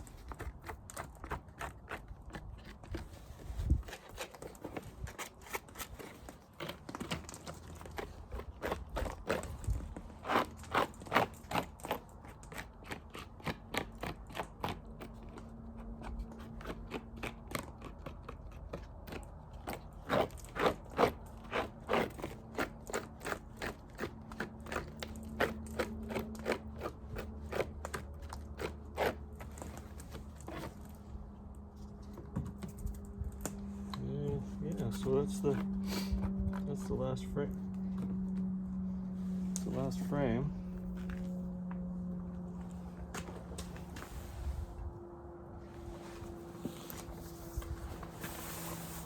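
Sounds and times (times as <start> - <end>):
beehive frames crunching scrapes: 0.0 - 15.1, 19.6 - 37.0, 45.6 - 49.0.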